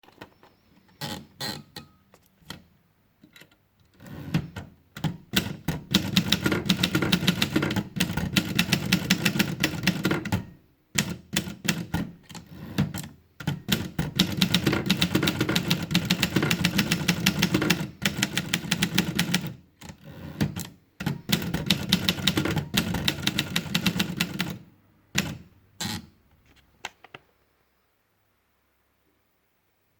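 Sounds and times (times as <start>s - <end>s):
typewriter keystrokes: 4.2s - 26.0s.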